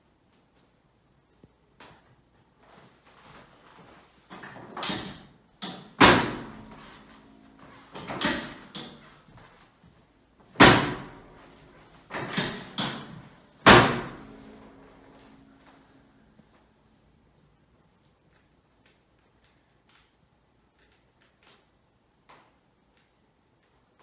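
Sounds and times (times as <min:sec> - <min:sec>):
treatment table thudding: 0:04.4 - 0:09.1, 0:10.6 - 0:15.3.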